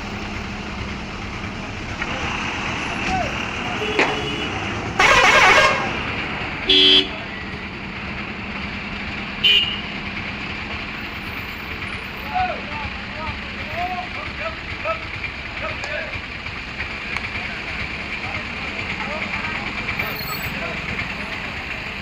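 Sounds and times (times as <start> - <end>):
street traffic noise: 0.0 - 22.0
bus horns honking: 2.1 - 7.4, 9.4 - 10.0.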